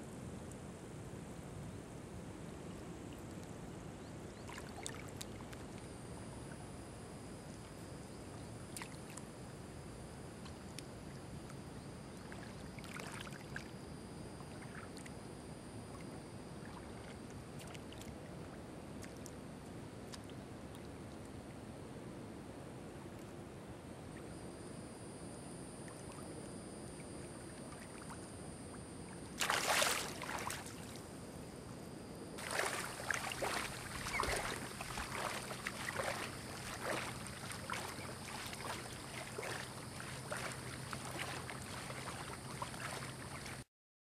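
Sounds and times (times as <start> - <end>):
splashing in shallow water: 4.4 - 5.8, 8.7 - 9.3, 12.1 - 13.8, 29.2 - 31.1, 32.4 - 43.6
loud splash: 29.4 - 30.8, 32.4 - 39.6.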